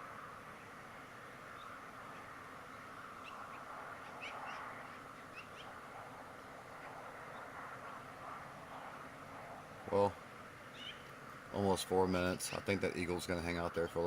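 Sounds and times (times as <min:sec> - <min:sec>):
faint outdoor hiss: 0:00.0 - 0:14.0
bird chirping: 0:01.5 - 0:05.8, 0:10.7 - 0:11.1.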